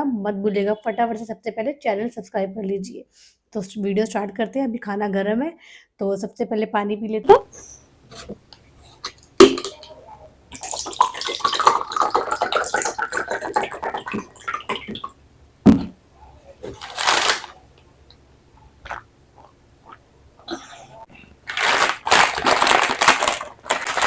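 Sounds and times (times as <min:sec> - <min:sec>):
water pouring into a glass: 0:09.1 - 0:15.2.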